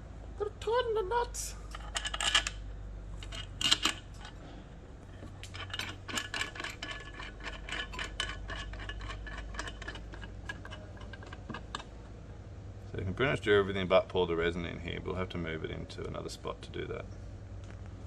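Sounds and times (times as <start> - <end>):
metallic clicks and clinks: 1.7 - 2.6, 3.2 - 4.4, 5.2 - 11.9.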